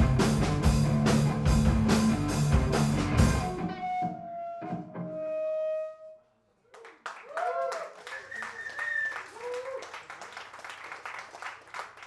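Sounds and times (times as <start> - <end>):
live punk rock band: 0.0 - 4.2.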